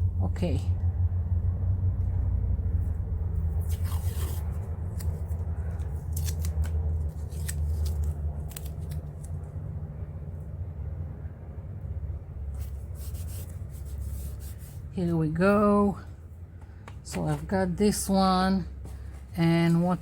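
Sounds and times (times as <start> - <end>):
steady low hum: 0.0 - 20.0
fingernail scratching tape: 3.6 - 9.3.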